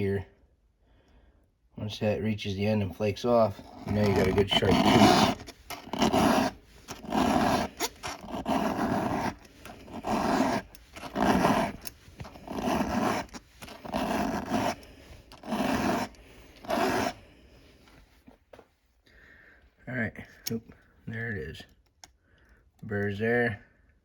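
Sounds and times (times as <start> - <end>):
file rasping on chainsaw chain: 3.6 - 17.2.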